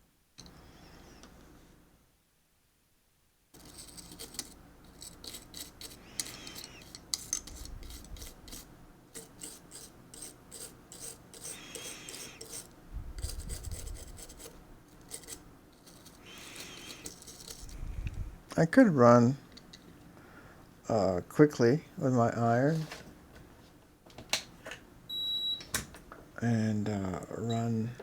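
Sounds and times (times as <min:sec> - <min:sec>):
scraping strokes on hard surface: 0:03.6 - 0:18.1.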